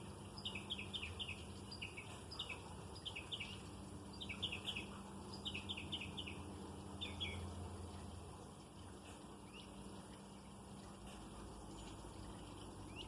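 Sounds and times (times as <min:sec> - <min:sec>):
low steady hum: 0:00.0 - 0:13.0
small bird chirping: 0:00.4 - 0:06.4, 0:07.0 - 0:07.5.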